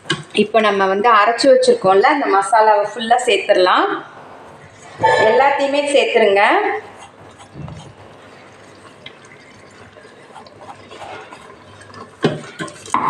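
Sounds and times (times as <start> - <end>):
wet liquid sounds: 6.7 - 13.0.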